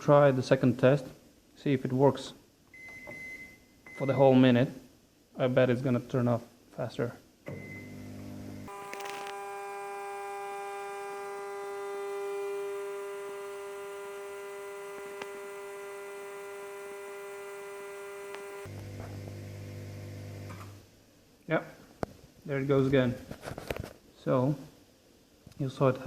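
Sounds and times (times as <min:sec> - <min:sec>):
microwave oven humming: 0:07.5 - 0:20.6.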